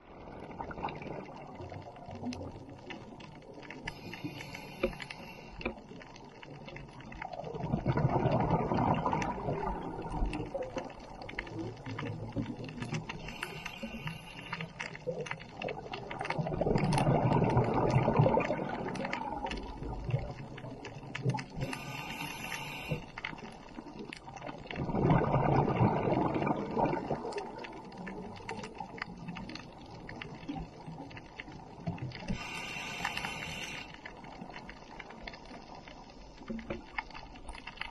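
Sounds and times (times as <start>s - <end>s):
exhaled bubbles rumbling: 0.0s - 37.9s
small clicks and crackles: 0.0s - 37.9s
hissing regulator inhalations: 3.9s - 5.7s, 13.2s - 14.8s, 21.6s - 23.2s, 32.3s - 34.0s.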